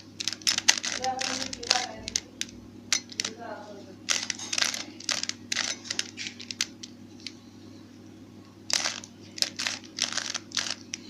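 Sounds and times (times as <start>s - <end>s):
plastic puzzle cube clicking: 0.0s - 3.4s, 4.1s - 6.9s, 8.7s - 11.0s.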